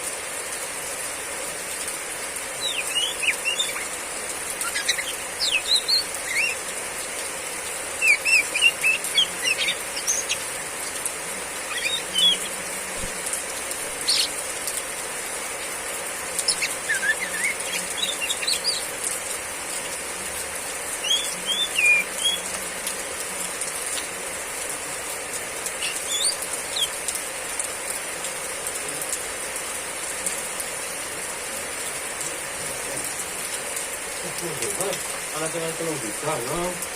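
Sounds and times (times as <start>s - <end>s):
heavy rain hiss: 0.0s - 36.9s
bird chirping calls: 2.6s - 6.8s, 7.9s - 10.6s, 11.6s - 12.7s, 13.9s - 14.5s, 16.4s - 19.0s, 21.0s - 22.5s, 25.8s - 27.0s.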